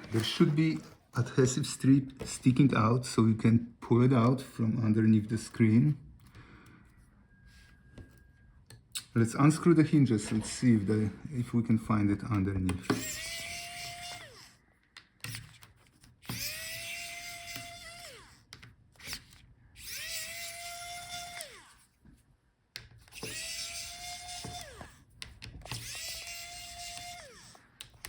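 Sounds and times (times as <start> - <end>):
small clicks of bit and screws: 12.3 - 21.8, 22.7 - 28.0
electric screwdriver whine: 12.8 - 14.6, 16.2 - 18.4, 19.0 - 21.8, 23.1 - 25.0, 25.6 - 27.7.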